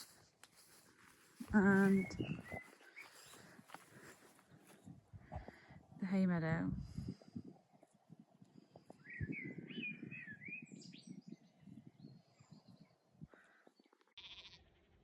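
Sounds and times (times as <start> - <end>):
songbird singing: 1.4 - 4.0, 8.8 - 14.0
bird chirps: 1.7 - 3.5, 9.0 - 13.0.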